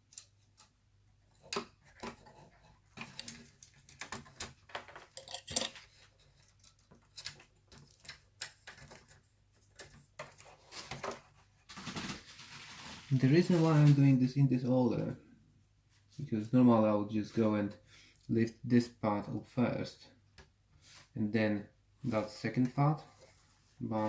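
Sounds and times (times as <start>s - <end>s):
clicks and clattering of laptop parts: 1.4s - 11.3s.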